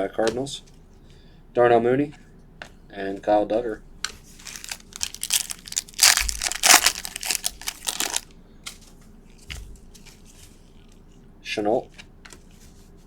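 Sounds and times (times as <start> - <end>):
foil wrapper crinkling: 4.3 - 8.3.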